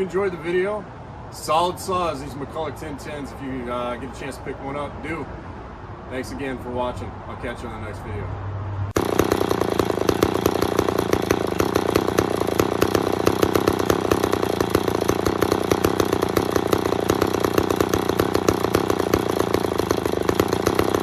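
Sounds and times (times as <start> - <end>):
chainsaw running: 9.0 - 21.0.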